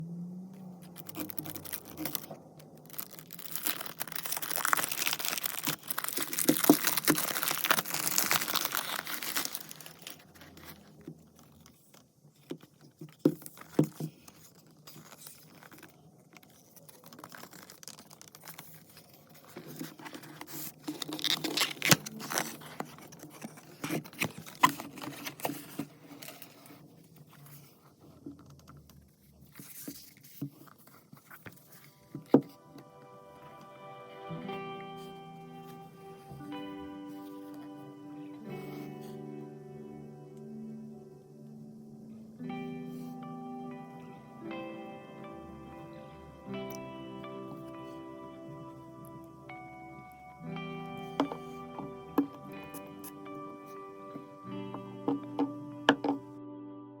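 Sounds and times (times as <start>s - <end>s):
wrapping crinkling and tearing: 0.8s - 32.5s.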